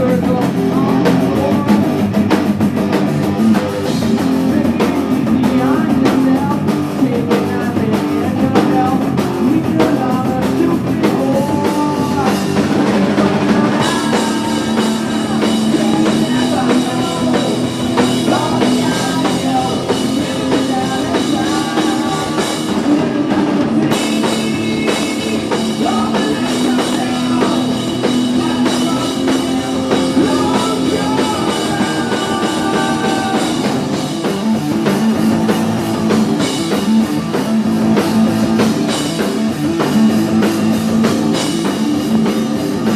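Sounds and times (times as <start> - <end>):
person singing: 0.0 - 2.1, 3.4 - 35.1
bass guitar: 0.0 - 42.9
distorted electric guitar: 0.0 - 42.9
drum kit: 0.0 - 42.9.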